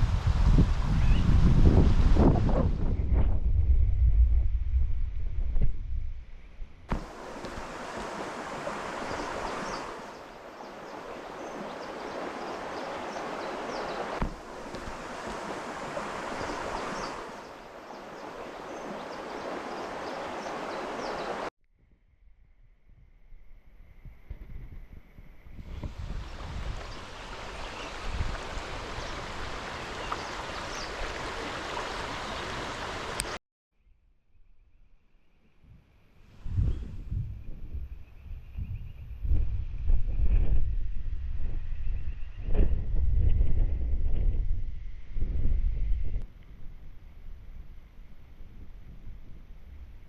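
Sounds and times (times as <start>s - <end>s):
rushing water: 6.9s - 21.5s, 25.7s - 33.4s.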